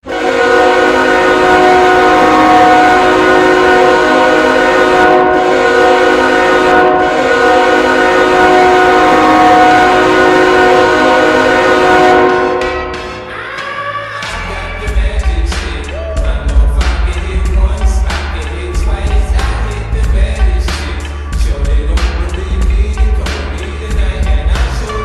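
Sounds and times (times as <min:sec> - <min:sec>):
goal horn chord: 0:00.0 - 0:13.5.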